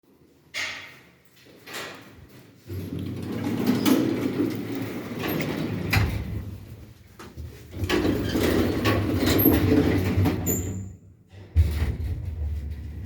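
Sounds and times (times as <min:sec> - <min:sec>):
sliding elevator doors rumbling: 0:02.7 - 0:06.8, 0:07.4 - 0:10.8.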